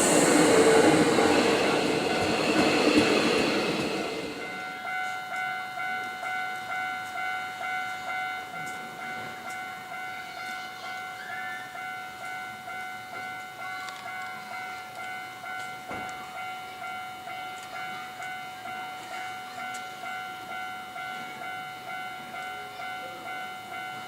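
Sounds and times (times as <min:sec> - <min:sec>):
train passing: 0:00.0 - 0:10.3
railroad crossing alarm ringing: 0:00.0 - 0:24.0.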